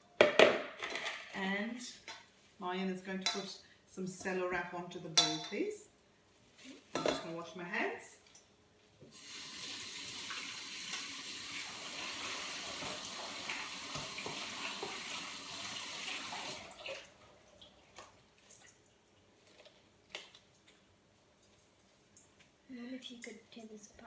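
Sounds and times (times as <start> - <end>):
tap running into sink: 9.6 - 16.6.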